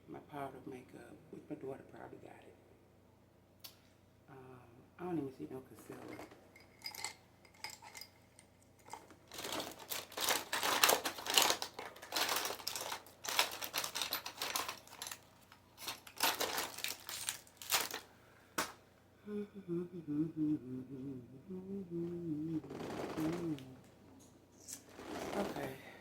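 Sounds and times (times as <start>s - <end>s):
plastic makeup cases clattering: 8.9s - 18.8s.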